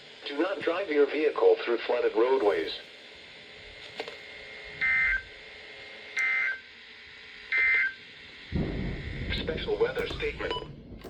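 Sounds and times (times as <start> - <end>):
digital data bursts warbling: 9.3 - 10.8.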